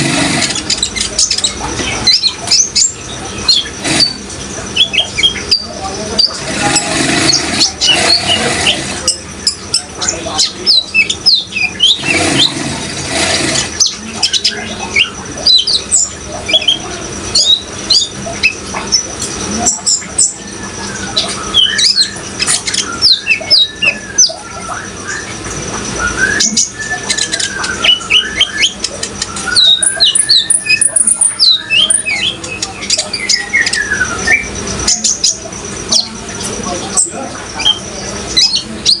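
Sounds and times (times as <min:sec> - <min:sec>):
water sound: 0:00.0 - 0:29.6
birds chirping: 0:00.0 - 0:39.0.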